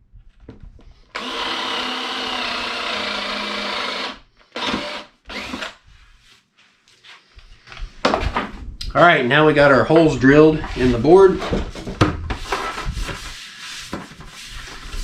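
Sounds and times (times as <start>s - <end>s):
power drill boring wood: 1.1s - 5.8s.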